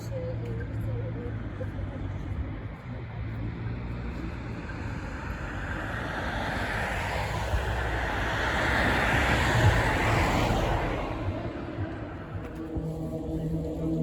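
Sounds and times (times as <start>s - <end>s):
low rumble: 7.4s - 14.0s.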